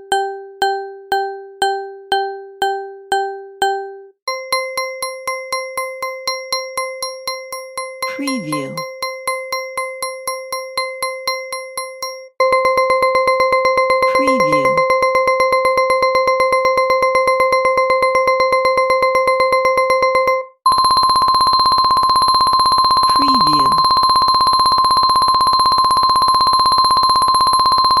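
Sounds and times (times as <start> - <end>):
high pulsing alarm ring: 20.7 - 28.0.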